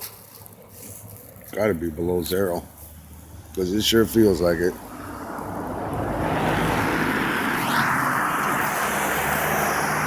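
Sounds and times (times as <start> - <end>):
motor vehicle passing: 2.8 - 10.0.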